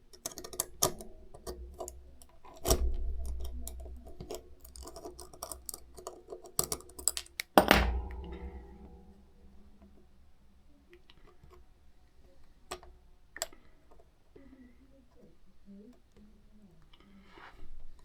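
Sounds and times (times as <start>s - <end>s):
clicks and taps of small parts: 0.1s - 8.6s
loud knocks: 7.6s - 9.4s.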